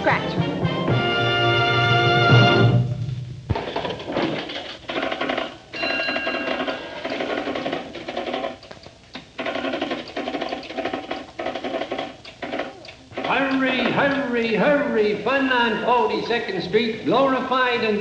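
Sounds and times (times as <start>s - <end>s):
electric bell ringing: 5.7s - 7.0s.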